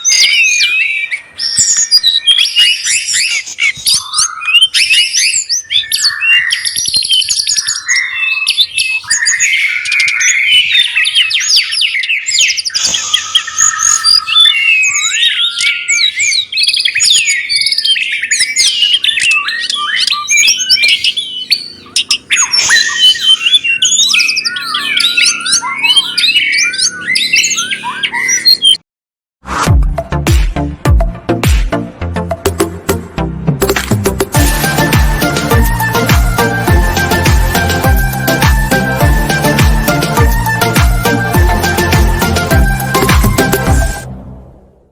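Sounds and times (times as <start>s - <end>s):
songbird chirping and trilling: 0.0s - 28.8s.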